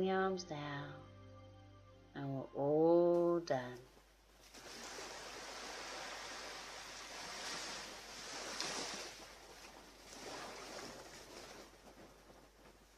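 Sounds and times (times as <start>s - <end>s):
surf washing onto beach: 4.4s - 12.2s.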